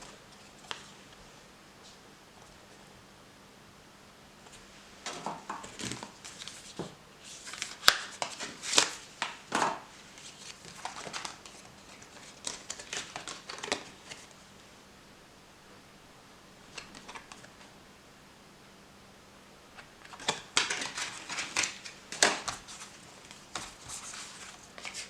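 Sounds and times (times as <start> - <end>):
paper and packaging rustling: 5.1 - 14.4, 19.8 - 25.0.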